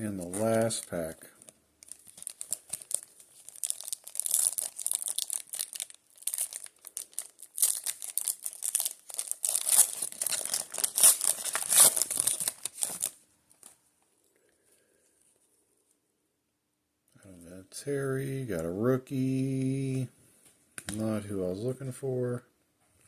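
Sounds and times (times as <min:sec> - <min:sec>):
card pack wrapper tearing and crinkling: 0:00.0 - 0:13.8.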